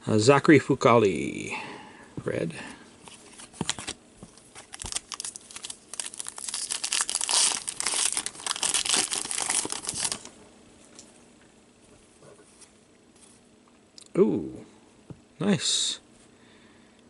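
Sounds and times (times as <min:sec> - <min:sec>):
wrapper crinkling: 0:03.1 - 0:10.4.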